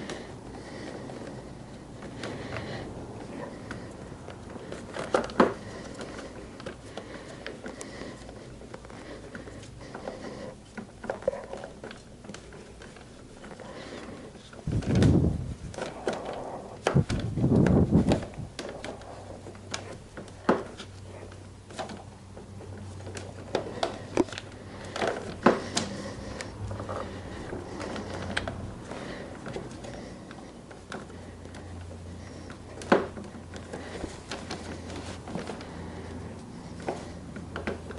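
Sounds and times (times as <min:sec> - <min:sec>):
light clicks and knocks of hand work: 0:00.0 - 0:37.9
rubbing and handling noise: 0:00.0 - 0:37.9.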